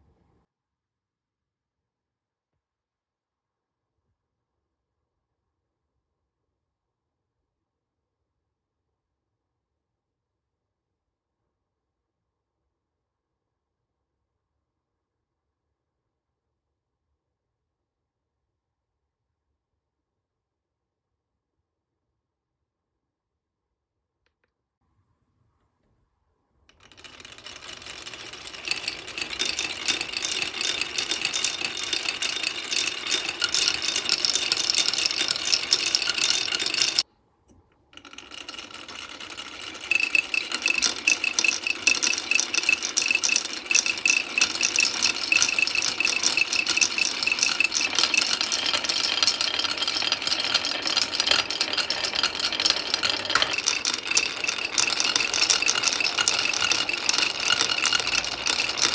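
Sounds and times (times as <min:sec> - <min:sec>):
marbles rattling down wooden run: 0:26.8 - 0:37.0, 0:38.0 - 0:58.9.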